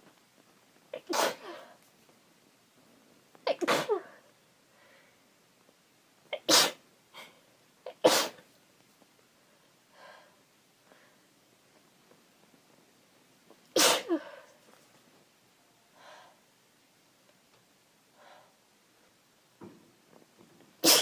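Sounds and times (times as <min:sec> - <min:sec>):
woman sneezing: 0:01.0 - 0:01.7, 0:03.6 - 0:04.2, 0:13.8 - 0:14.4.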